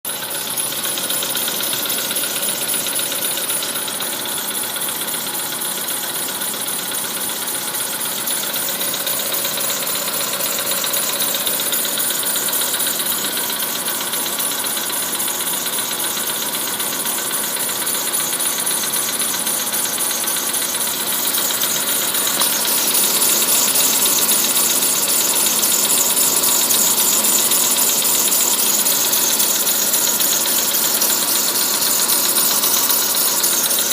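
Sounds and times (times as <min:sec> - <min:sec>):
car engine running: 0:00.1 - 0:33.9.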